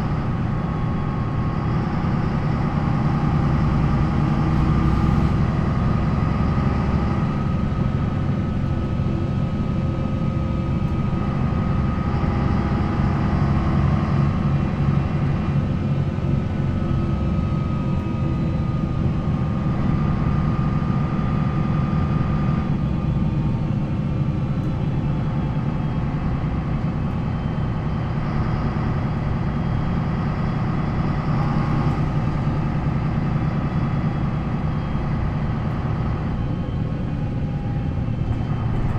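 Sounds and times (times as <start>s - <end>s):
bus diesel engine running: 0.0s - 38.9s
thin wavering whine: 4.4s - 8.5s.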